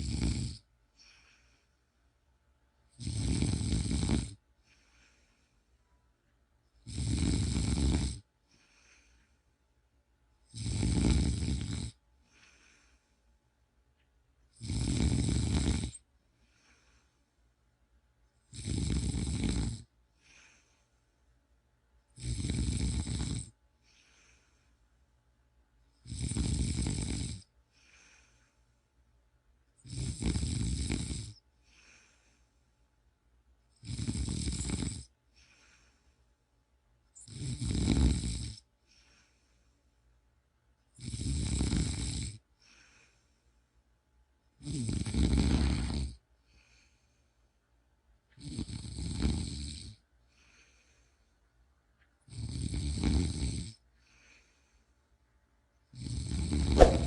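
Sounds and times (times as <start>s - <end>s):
person snoring: 0.0s - 1.6s, 3.0s - 4.4s, 6.8s - 9.1s, 10.5s - 13.0s, 14.6s - 16.0s, 18.5s - 20.6s, 22.2s - 24.5s, 26.0s - 28.3s, 29.8s - 32.2s, 33.8s - 35.1s, 37.2s - 38.6s, 41.0s - 42.4s, 44.6s - 46.2s, 56.0s - 57.0s
faint breath: 0.9s - 2.2s, 4.5s - 6.2s, 8.4s - 9.8s, 12.2s - 13.5s, 16.3s - 17.6s, 20.1s - 21.4s, 23.8s - 25.0s, 27.6s - 29.0s, 31.6s - 32.9s, 35.3s - 36.4s, 38.8s - 40.2s, 42.6s - 43.8s, 46.4s - 47.6s, 50.2s - 51.6s, 53.9s - 55.2s, 56.8s - 57.0s.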